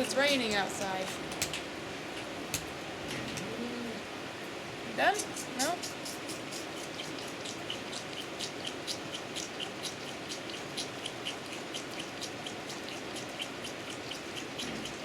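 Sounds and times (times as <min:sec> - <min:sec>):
goat kid sucking from a bottle: 0:05.2 - 0:15.0.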